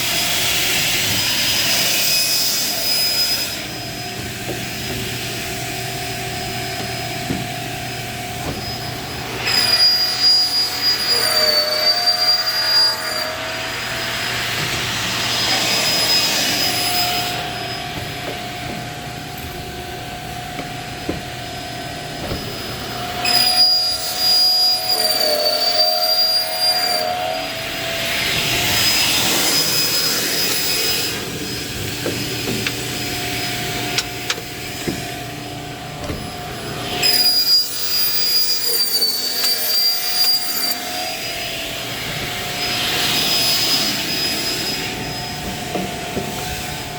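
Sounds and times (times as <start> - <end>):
cutting machine whine: 0.0 - 46.9
saw rasping through pipe: 8.4 - 18.0.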